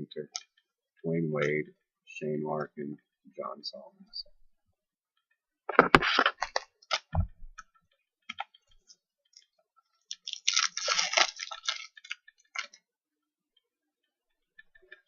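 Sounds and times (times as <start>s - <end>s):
card packs crinkling: 10.1s - 12.8s.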